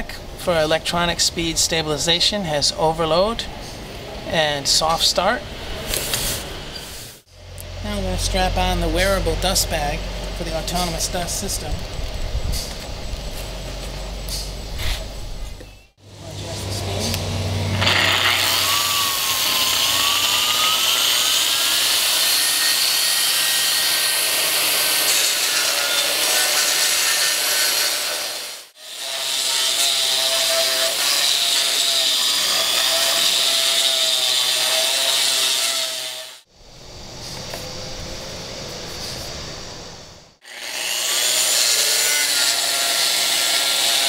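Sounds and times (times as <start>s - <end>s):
concrete grinder grinding: 16.2s - 36.4s.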